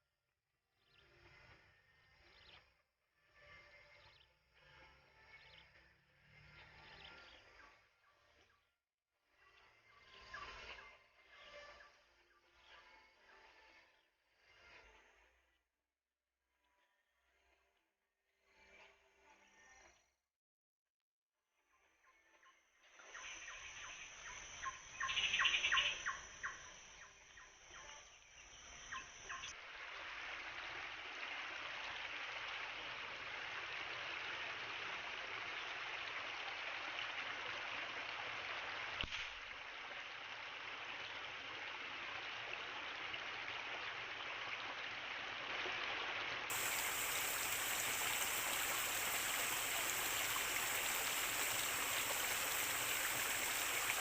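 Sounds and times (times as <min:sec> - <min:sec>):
insect drone: 0:22.8 - 0:30.1, 0:46.5 - 0:54.0
water rushing: 0:46.5 - 0:54.0.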